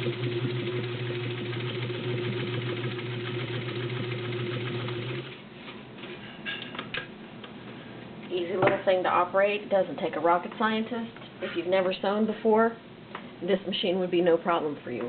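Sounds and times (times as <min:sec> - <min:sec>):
sewing machine stitching: 0:00.0 - 0:05.4.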